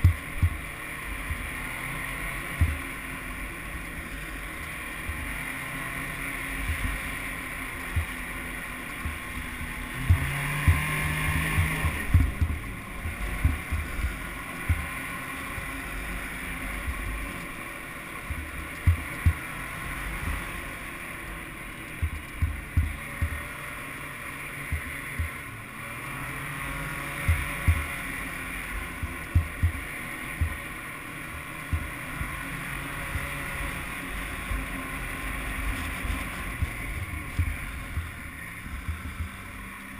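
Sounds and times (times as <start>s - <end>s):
short low thumps: 0.0s - 1.5s, 2.6s - 2.9s, 9.0s - 15.0s, 22.0s - 23.5s, 27.3s - 27.9s, 29.0s - 30.6s, 36.5s - 39.7s
snowmobile engine running: 0.0s - 39.9s.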